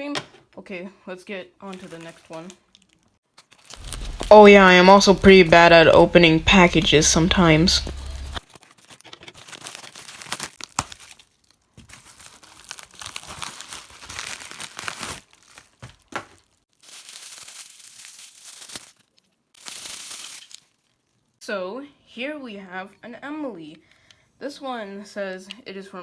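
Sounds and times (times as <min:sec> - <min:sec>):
package tearing and rustling: 0:01.7 - 0:04.5, 0:07.8 - 0:21.2
sharp crackles: 0:01.8 - 0:09.0.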